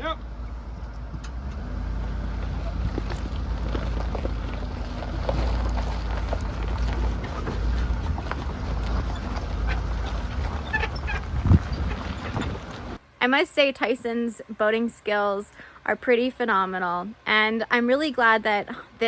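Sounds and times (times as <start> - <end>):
low rumble: 0.0 - 13.0.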